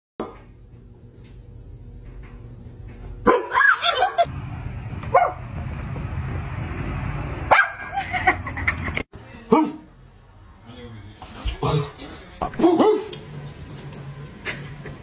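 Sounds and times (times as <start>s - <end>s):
dog barking and yipping: 3.2s - 4.2s, 5.1s - 5.4s, 7.5s - 8.0s, 12.6s - 13.2s.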